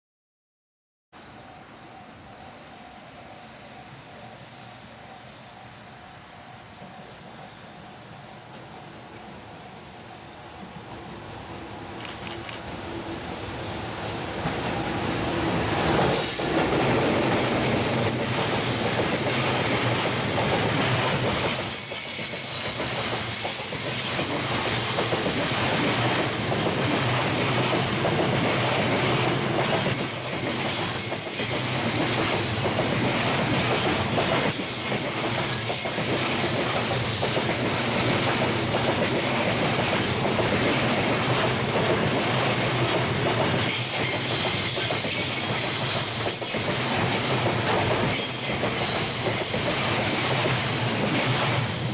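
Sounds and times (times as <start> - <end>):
train wheels clattering over joints: 16.0 - 51.7
wheel squeal: 21.1 - 23.7.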